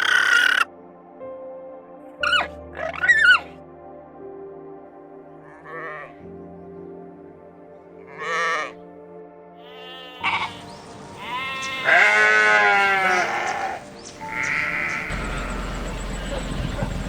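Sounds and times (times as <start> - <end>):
background music: 0.0 - 17.0
livestock bleating: 5.4 - 6.2, 8.1 - 8.8, 9.6 - 17.0.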